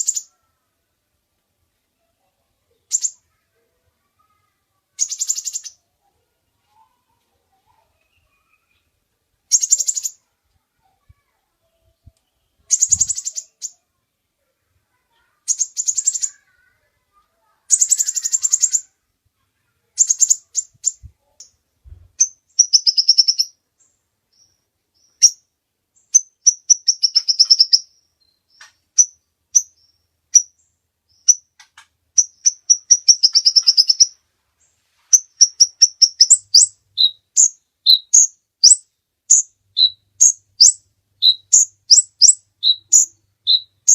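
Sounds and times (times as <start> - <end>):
sunbird trilling and chirping: 0.0 - 0.4, 2.7 - 3.4, 4.2 - 5.8, 9.5 - 10.3, 12.0 - 13.9, 15.1 - 17.0, 17.7 - 19.0, 20.0 - 21.6, 22.2 - 43.9.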